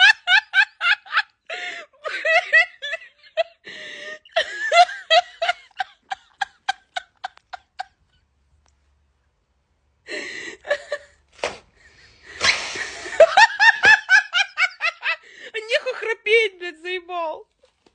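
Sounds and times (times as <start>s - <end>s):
sharp hiss: 12.3s - 13.2s.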